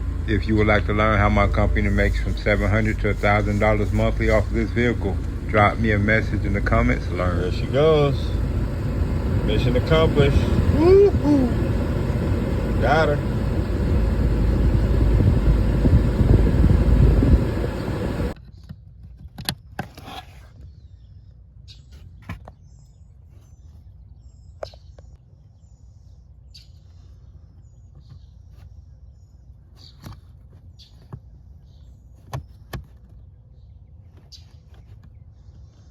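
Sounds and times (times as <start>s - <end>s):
blower motor rushing air: 0.0s - 18.4s.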